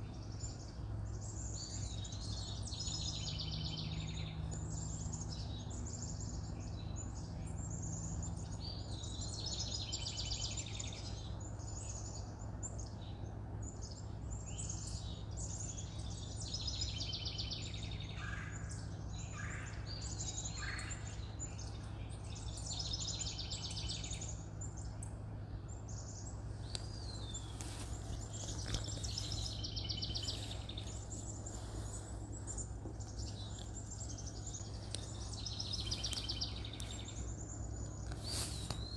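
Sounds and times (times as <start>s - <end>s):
wild birds singing: 0.0s - 38.9s
steady low hum: 17.6s - 38.9s.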